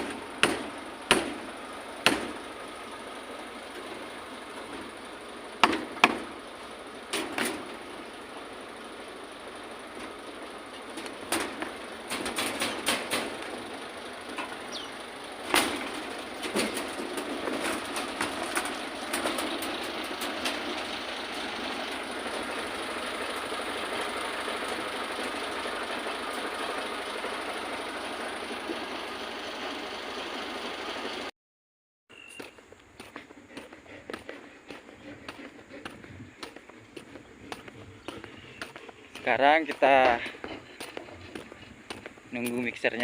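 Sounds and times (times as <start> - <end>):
engine running: 0.0 - 31.3, 32.2 - 43.0
sharp knocks and clicks: 5.6 - 6.3, 11.0 - 13.5.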